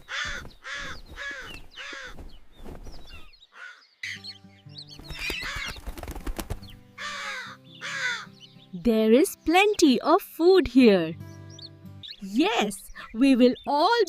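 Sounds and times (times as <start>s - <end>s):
crow cawing: 0.0s - 2.2s, 3.5s - 4.2s, 5.4s - 5.7s, 7.0s - 8.4s
bird calls: 0.0s - 10.0s, 11.1s - 14.0s
background music: 4.0s - 14.0s.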